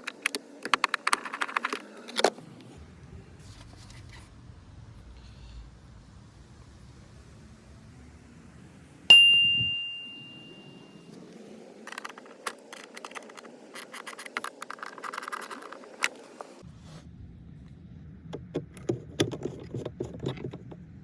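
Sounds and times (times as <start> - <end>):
metallic clicking and rattling: 0.0 - 2.3, 11.8 - 16.6, 18.4 - 20.8
metal tool ringing ding: 9.1 - 11.1.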